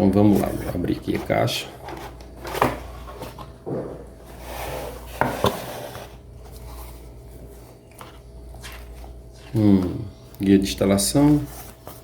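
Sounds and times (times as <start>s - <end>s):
cardboard scraping and rustling: 0.2s - 3.6s, 4.2s - 9.5s, 11.2s - 12.0s.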